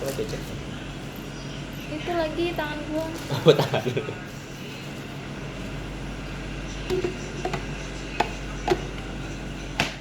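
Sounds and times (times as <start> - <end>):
low electric appliance hum: 0.0 - 10.0
handling clicks and knocks: 6.9 - 9.1.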